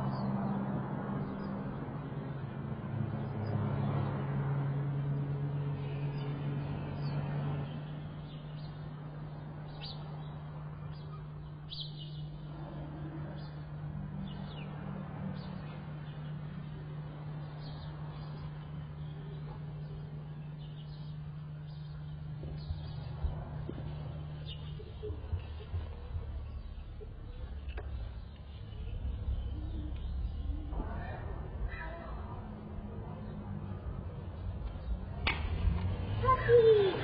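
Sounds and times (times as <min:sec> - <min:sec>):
steady low hum: 0:00.0 - 0:36.8
bird chirps: 0:09.7 - 0:12.4, 0:17.4 - 0:31.0.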